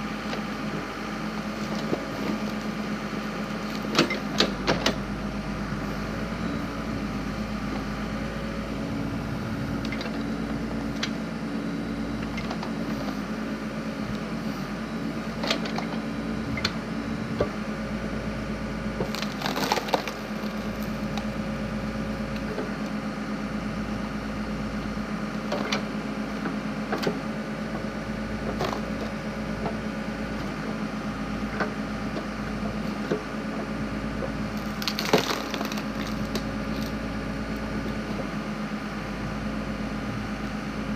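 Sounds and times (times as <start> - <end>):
backhoe engine running: 0.0 - 40.9
wood cracking and splintering: 19.0 - 21.4, 34.5 - 37.1.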